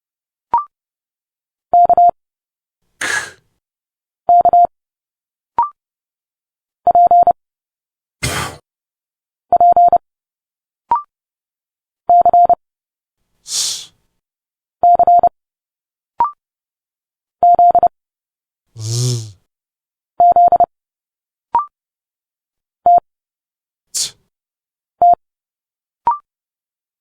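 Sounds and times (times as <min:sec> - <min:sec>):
spoken speech sounds: 0:18.8 - 0:19.4.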